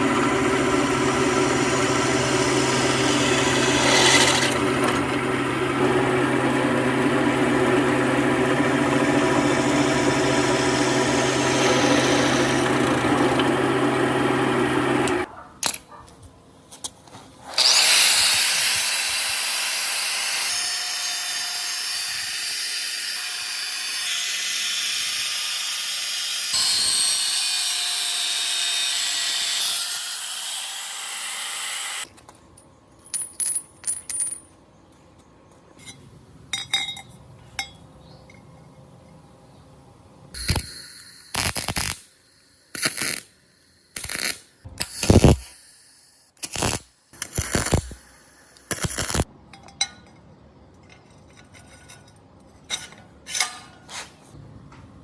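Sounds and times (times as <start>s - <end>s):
engine running: 0.0s - 15.3s
power tool running: 0.0s - 15.3s, 17.6s - 32.1s, 40.4s - 49.3s.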